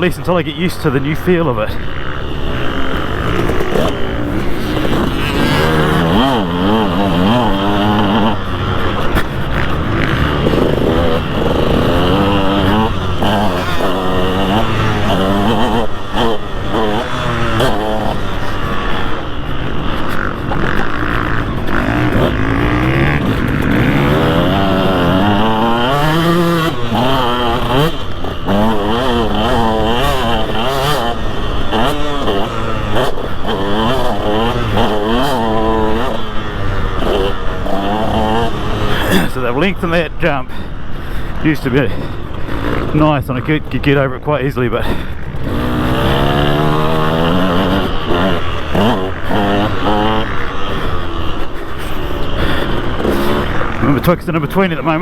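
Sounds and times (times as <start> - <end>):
motocross engine revving: 0.0 - 55.0.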